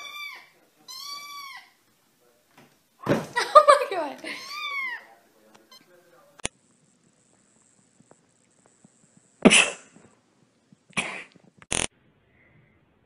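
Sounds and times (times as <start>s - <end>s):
sneeze-like burst: 9.4s - 10.0s.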